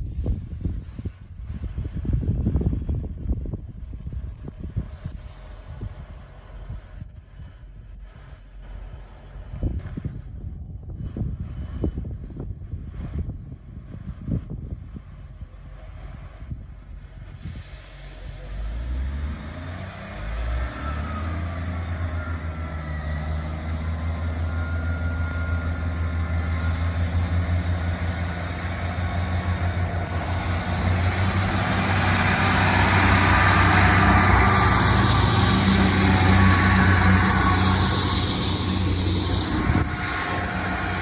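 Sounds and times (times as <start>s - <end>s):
diesel train engine: 0.0s - 41.0s.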